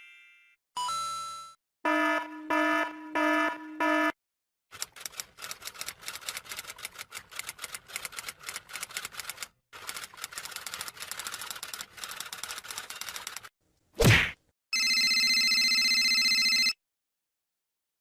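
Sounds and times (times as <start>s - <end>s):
typewriter keystroke clacks: 4.7s - 13.5s.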